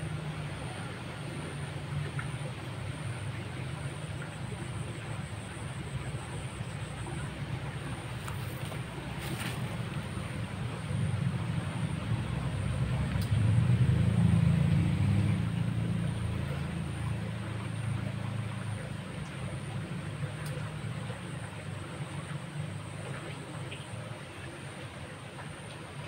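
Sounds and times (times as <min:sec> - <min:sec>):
passing vehicle engine rumble: 0:00.0 - 0:25.8.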